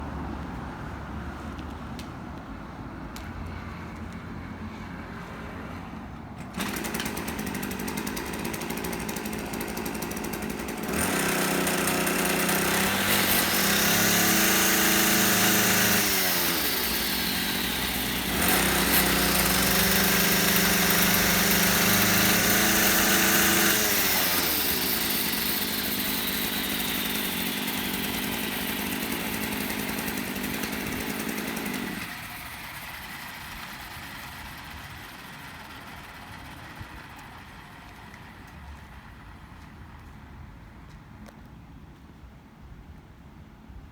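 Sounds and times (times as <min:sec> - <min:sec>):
small engine idling and revving: 0:06.4 - 0:40.1.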